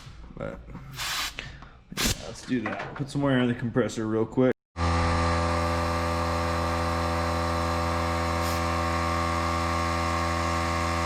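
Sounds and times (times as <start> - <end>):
air compressor motor humming: 4.8 - 11.0.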